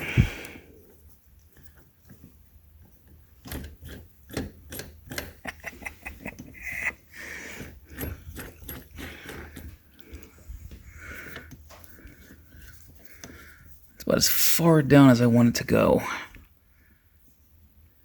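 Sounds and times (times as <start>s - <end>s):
person breathing: 0.0s - 0.8s, 6.7s - 8.2s, 9.0s - 13.8s.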